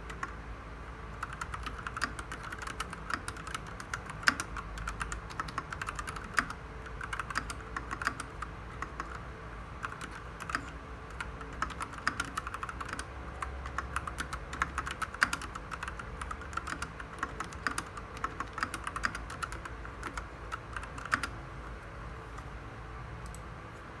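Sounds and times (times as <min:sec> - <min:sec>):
mechanical keyboard typing: 0:00.0 - 0:00.4, 0:01.1 - 0:21.8.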